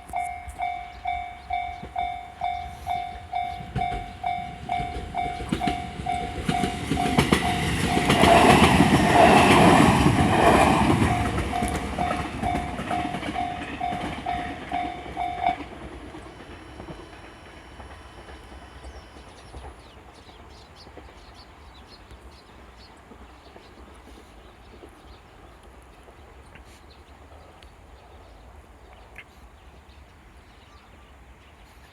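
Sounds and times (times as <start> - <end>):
level crossing warning bell: 0.0 - 19.9
train passing: 0.0 - 28.9.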